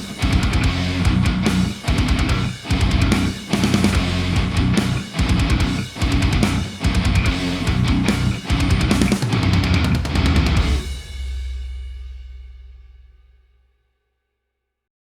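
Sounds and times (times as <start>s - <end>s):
rock music with electric guitar: 0.0s - 11.4s.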